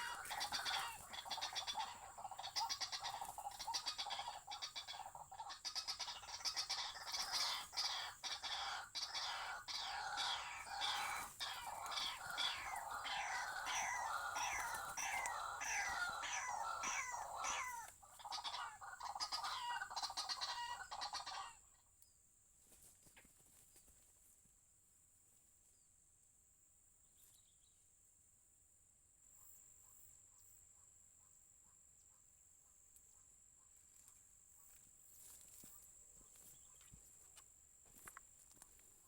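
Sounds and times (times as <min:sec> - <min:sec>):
waterhen calling: 0:00.0 - 0:21.6.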